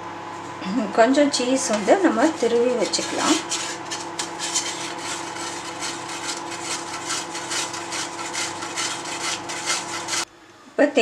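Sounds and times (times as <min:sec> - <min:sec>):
cheese rasping on a grater: 0:01.6 - 0:10.3.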